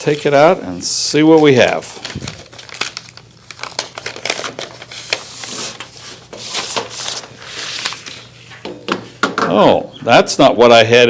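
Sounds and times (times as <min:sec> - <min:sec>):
packaging crinkling and rustling: 0:01.2 - 0:08.4.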